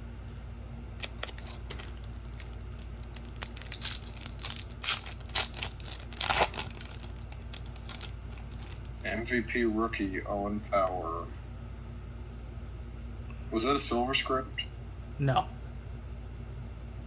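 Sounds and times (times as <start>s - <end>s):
steady low hum: 0.0s - 17.0s
foil wrapper crinkling: 1.0s - 9.1s.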